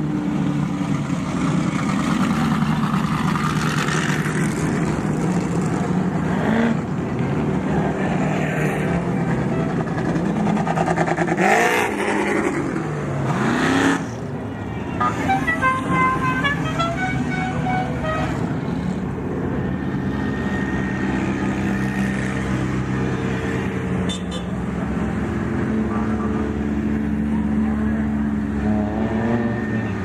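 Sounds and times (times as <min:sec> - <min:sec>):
race vehicle engines running: 0:00.0 - 0:30.0
musical vehicle horn tune: 0:14.9 - 0:18.4.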